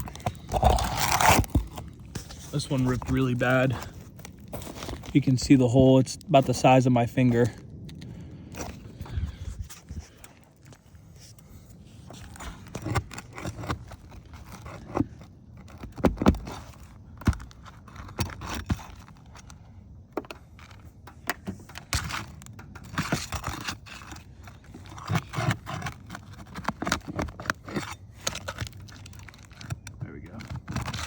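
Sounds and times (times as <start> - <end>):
metal bar scraping shingles: 20.2 - 29.8.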